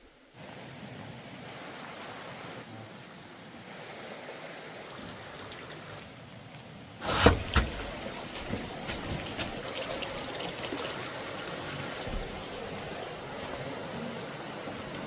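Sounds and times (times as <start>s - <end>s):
water trickling and splashing: 0.4s - 15.0s
loud knocks: 7.1s - 9.6s.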